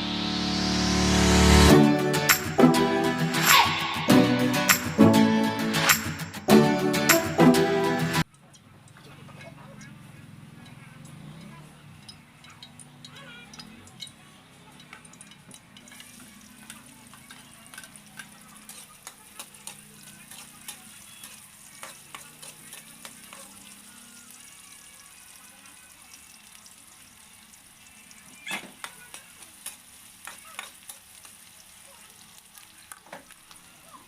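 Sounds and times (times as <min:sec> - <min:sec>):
food sizzling in hot oil: 0:14.8 - 0:34.0
oil crackles and pops: 0:14.8 - 0:34.0.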